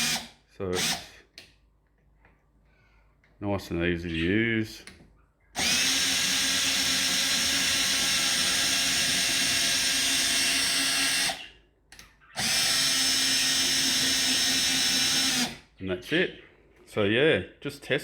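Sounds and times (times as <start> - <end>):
power drill running: 0.0 - 1.0, 5.6 - 11.5, 12.4 - 15.6.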